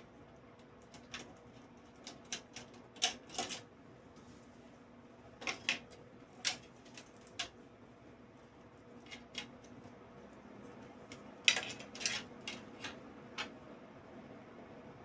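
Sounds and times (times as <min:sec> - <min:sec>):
faint steady hum: 0:00.0 - 0:15.0
cables and connectors rattling: 0:00.6 - 0:03.7, 0:05.4 - 0:07.6, 0:09.0 - 0:13.6.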